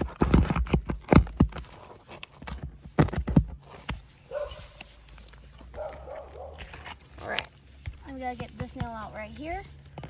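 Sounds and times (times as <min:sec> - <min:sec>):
hand tool knocking under shingles: 0:07.8 - 0:10.0.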